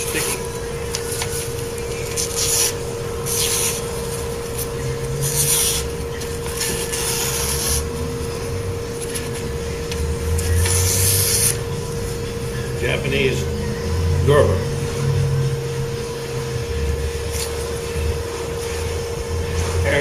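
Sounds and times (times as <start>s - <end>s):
sharpener motor humming: 0.0s - 20.0s.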